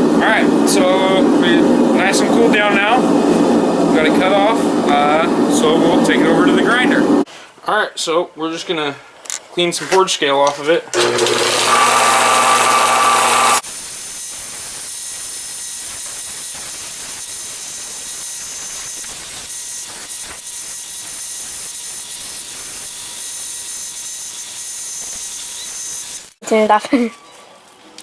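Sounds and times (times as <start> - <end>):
electric grinder whirring: 11.0 - 26.4.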